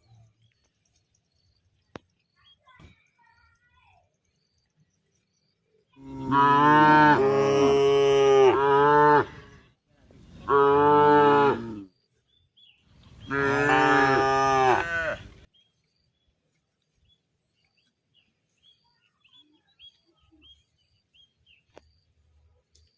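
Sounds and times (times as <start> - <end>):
cow mooing: 6.0 - 9.5, 10.5 - 11.9, 13.3 - 15.2.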